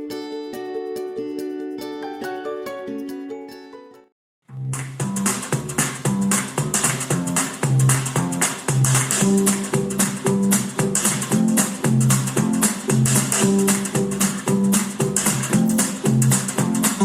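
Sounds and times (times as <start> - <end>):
acoustic guitar strumming: 15.5 - 16.7.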